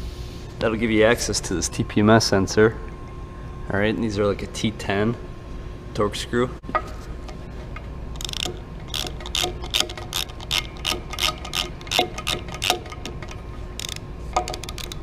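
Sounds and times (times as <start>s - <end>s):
ratchet clicking: 8.2s - 15.0s.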